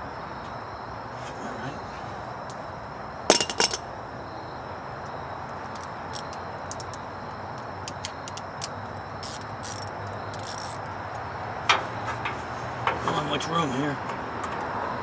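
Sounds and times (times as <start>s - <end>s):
small metal parts clicking: 7.8s - 11.8s.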